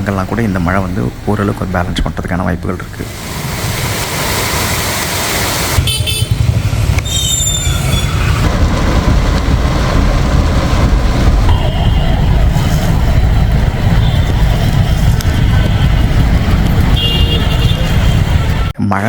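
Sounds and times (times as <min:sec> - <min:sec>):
traffic engine rumble: 0:00.0 - 0:18.8
vehicle horns tooting: 0:05.8 - 0:08.2, 0:11.5 - 0:12.4, 0:13.8 - 0:18.8.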